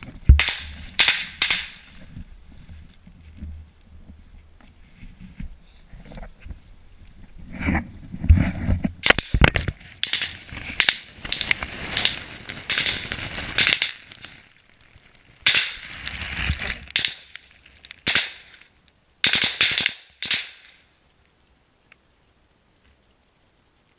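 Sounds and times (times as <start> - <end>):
small-arms gunfire: 0.4 - 1.8, 10.0 - 13.0, 13.6 - 14.0, 15.4 - 15.8, 17.0 - 17.3, 18.0 - 18.5, 19.2 - 20.7.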